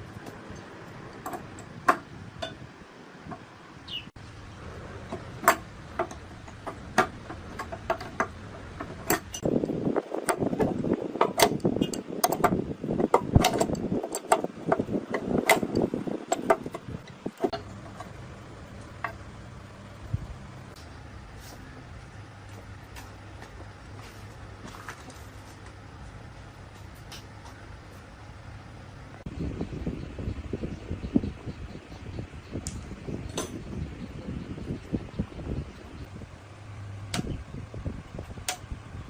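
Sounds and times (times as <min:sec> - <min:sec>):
scraping on metal: 0:05.0 - 0:09.5.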